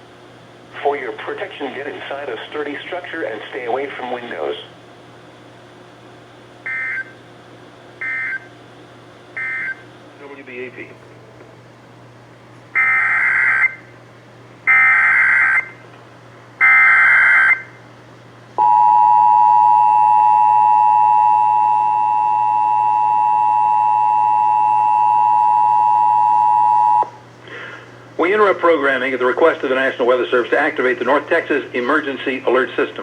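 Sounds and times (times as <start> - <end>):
two-tone attention signal: 18.6 - 27.1.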